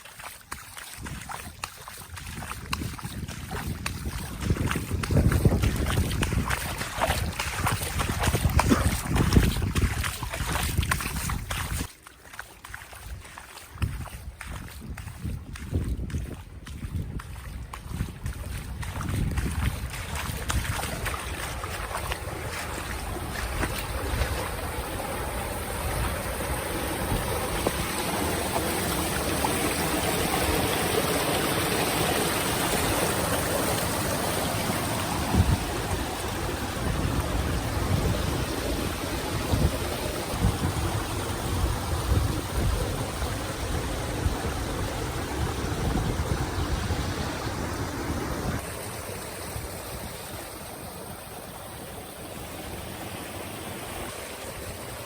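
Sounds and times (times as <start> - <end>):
water rushing: 0.0 - 55.0
wind buffeting microphone: 0.9 - 11.9, 13.0 - 31.9, 34.6 - 48.6.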